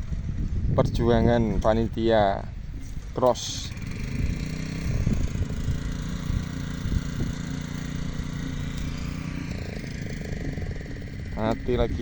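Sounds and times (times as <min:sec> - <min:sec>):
small petrol engine running: 0:02.8 - 0:12.0.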